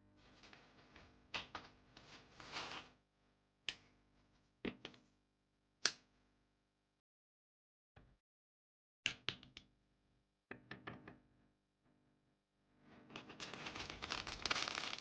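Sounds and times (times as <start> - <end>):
packaging rustling: 13.4 - 15.0.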